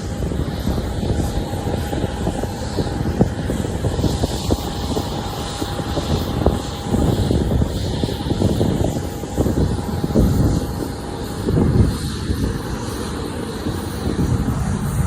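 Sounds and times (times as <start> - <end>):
jet engines droning: 0.0 - 15.0
wind buffeting microphone: 0.0 - 15.0.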